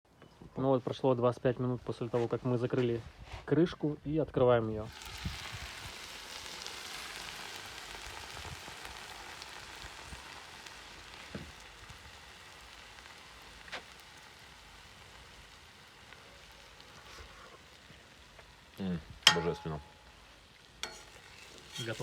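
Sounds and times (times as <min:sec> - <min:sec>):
oil sizzling in a pot: 0:04.8 - 0:22.0.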